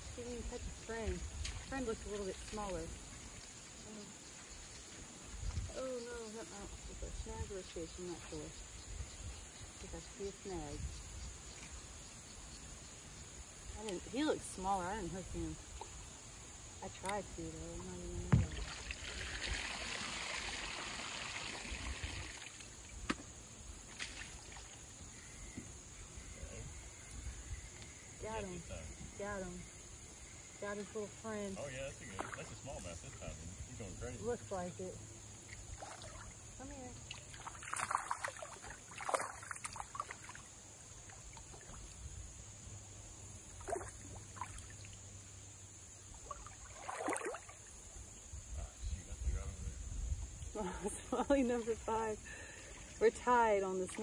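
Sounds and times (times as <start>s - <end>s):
creek water trickling: 0.0s - 54.0s
fish splashing in water: 18.3s - 22.8s, 35.4s - 41.9s, 46.2s - 47.8s.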